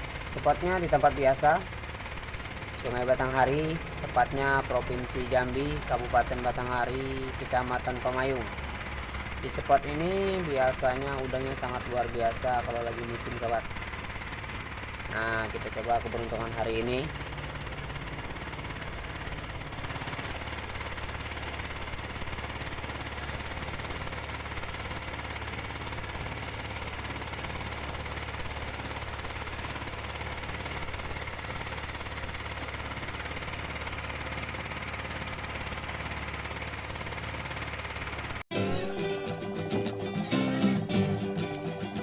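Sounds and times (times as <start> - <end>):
small engine chugging: 0.0 - 42.0.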